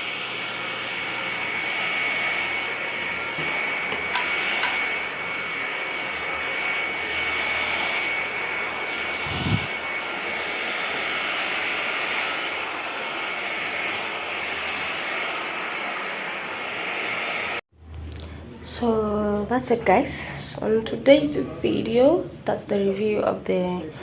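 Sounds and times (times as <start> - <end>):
vacuum cleaner running: 0.0 - 17.6.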